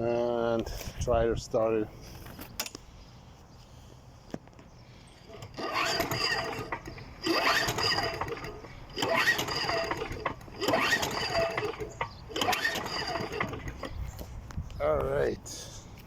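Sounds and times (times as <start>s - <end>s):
engine cranking and whirring: 5.2s - 14.3s
mower recoil starter pulled: 5.3s - 14.0s.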